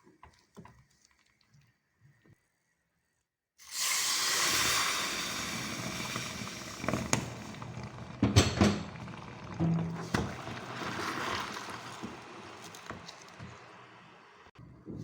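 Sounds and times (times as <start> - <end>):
water pouring hiss: 3.6 - 14.5.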